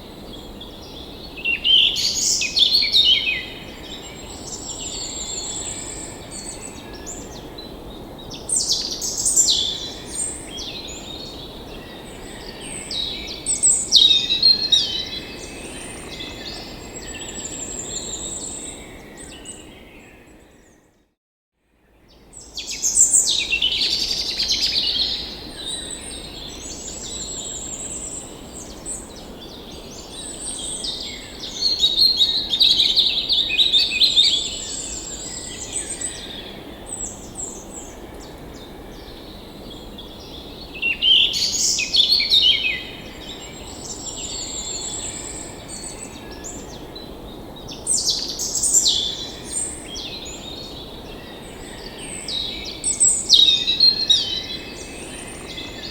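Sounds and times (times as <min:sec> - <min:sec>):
songbirds singing and chirping: 0:22.1 - 0:55.9.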